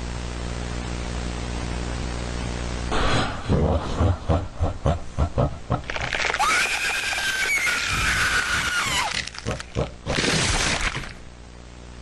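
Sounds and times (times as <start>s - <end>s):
crackling clicks and static: 5.7s - 6.9s, 9.0s - 12.0s
high-pitched squealing cry: 6.3s - 9.4s.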